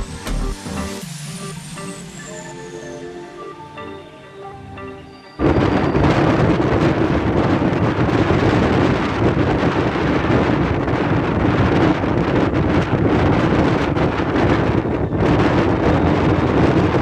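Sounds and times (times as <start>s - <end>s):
music: 0.0s - 8.3s
strong wind buffeting microphone: 5.4s - 17.0s.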